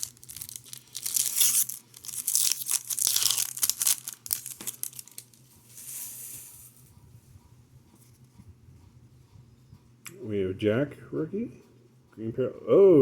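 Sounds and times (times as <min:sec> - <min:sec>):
wrapper tearing and crinkling: 0:00.0 - 0:05.4.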